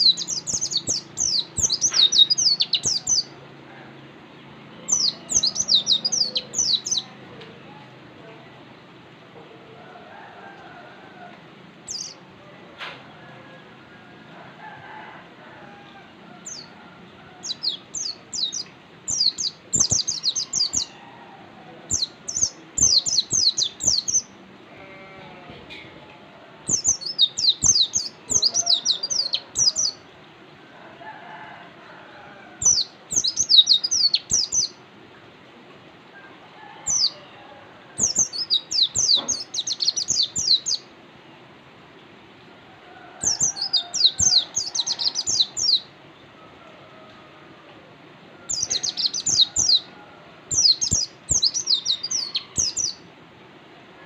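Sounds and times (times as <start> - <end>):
songbird chattering song: 0.0 - 3.4, 4.4 - 7.5, 11.8 - 12.2, 17.4 - 21.0, 21.9 - 24.4, 26.7 - 30.0, 32.6 - 34.8, 38.0 - 40.9, 43.2 - 45.9, 48.5 - 49.9, 50.5 - 53.0.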